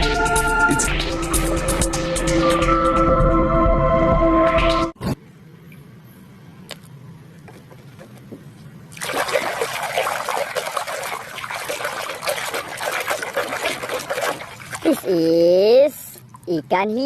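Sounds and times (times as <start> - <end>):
water running and splashing: 8.9 - 15.6.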